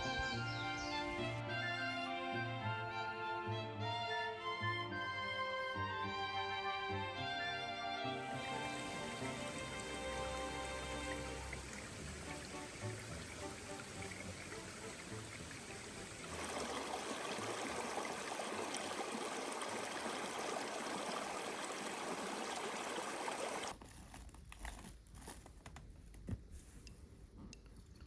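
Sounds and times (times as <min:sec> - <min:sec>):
running water rushing: 0:08.3 - 0:23.7.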